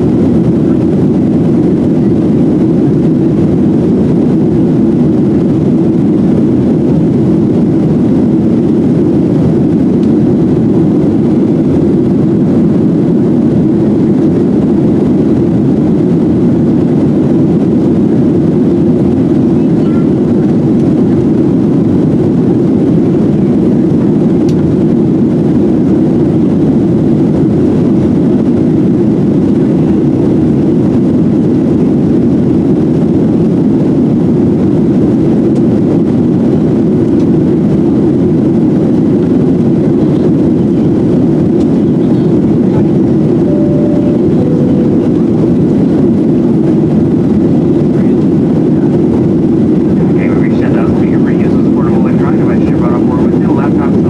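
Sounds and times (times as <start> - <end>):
jet engine cabin rumble: 0.0 - 54.0
two-note falling tone: 43.4 - 46.0.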